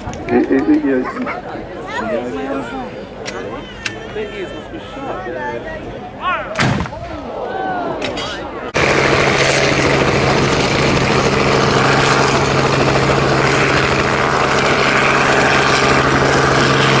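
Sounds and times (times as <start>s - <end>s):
propeller aircraft engine running: 8.7s - 17.0s.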